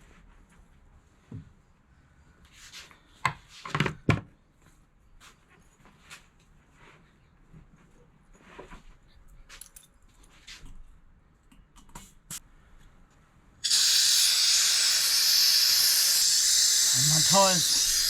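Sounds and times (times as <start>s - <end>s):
air hissing from tyre valve: 13.6s - 18.0s.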